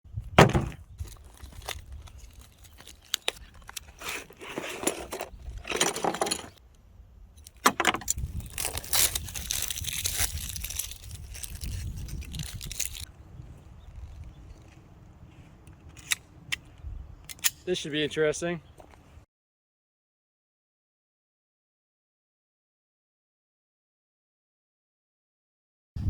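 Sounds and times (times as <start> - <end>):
rustling and scraping: 0.4 - 6.6, 7.4 - 13.1.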